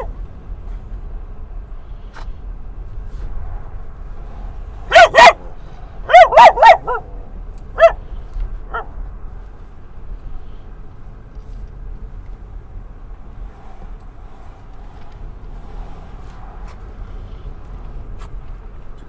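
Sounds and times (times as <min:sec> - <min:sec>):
dog barking excitedly: 0:00.0 - 0:00.2, 0:04.8 - 0:09.0
low rumble of moving car: 0:00.0 - 0:19.0.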